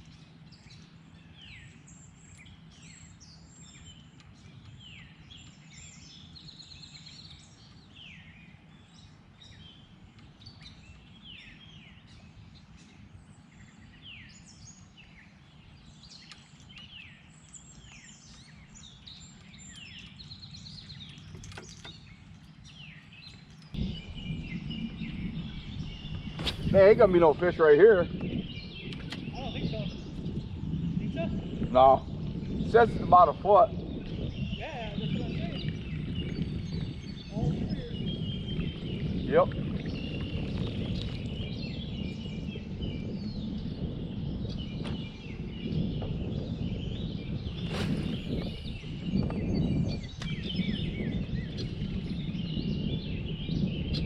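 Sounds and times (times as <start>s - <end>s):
songbirds chirping: 0.0s - 54.0s
low rumbling noise: 20.6s - 54.0s.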